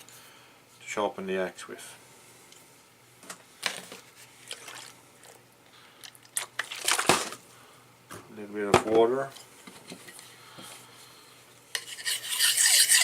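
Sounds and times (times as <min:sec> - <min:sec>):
tools clicking and scraping: 0:11.7 - 0:13.0.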